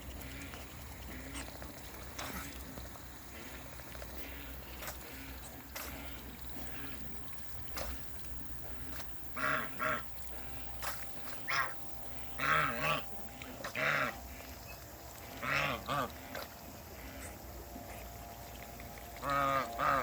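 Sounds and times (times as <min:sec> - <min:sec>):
steady low hum: 0:00.0 - 0:20.0
waterfowl honking: 0:08.7 - 0:20.0.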